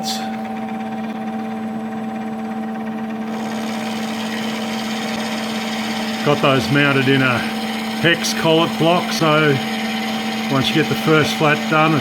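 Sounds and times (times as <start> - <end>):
milling machine spindle humming: 0.0 - 12.0.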